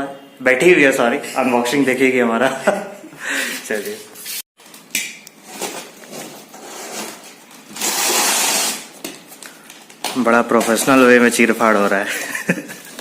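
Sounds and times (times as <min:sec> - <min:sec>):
packaging tearing rip: 0:07.7 - 0:09.0.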